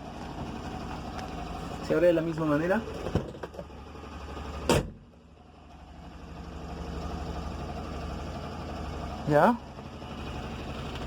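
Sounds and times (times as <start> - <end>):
small car engine idling: 0.0 - 11.0
door shutting thump: 4.7 - 5.0.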